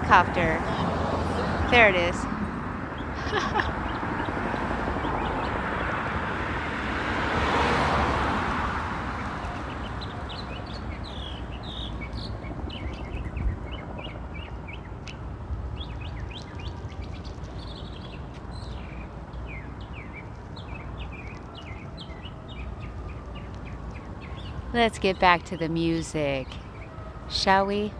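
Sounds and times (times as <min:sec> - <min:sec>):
vehicle passing: 0:00.0 - 0:14.5
city traffic hum: 0:00.0 - 0:27.9
songbird chirping: 0:07.4 - 0:27.9.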